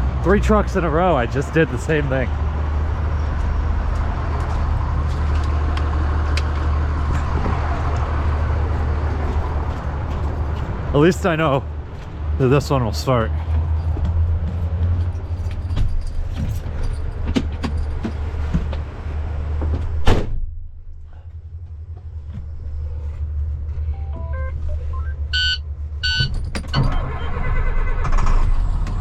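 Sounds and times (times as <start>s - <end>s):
knocks and rattles: 13.6s - 19.0s
truck door slamming: 20.0s - 20.5s
dashboard beeps: 23.9s - 27.4s
electronic dashboard tones: 23.9s - 27.8s.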